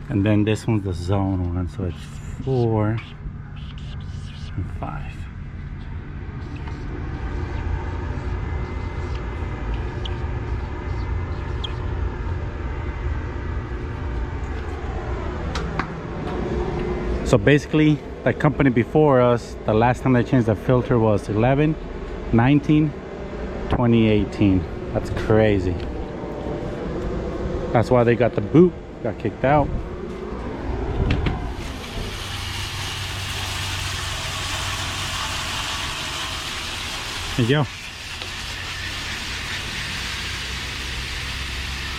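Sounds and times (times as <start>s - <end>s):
air conditioning hum: 0.0s - 41.9s.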